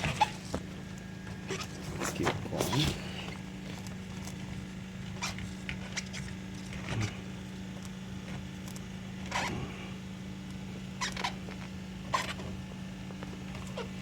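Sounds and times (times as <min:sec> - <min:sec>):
steady low hum: 0:00.0 - 0:14.0
scratchy rubber rustles: 0:01.4 - 0:04.5.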